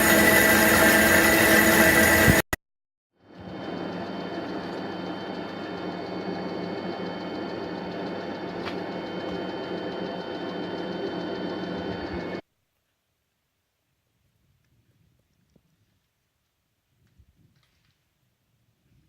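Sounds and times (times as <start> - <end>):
metal lathe humming and whining: 0.0 - 2.4, 3.3 - 12.4.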